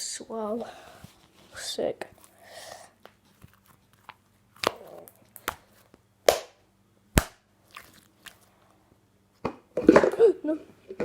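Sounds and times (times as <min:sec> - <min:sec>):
sharp pops of slime: 0:06.3 - 0:06.6.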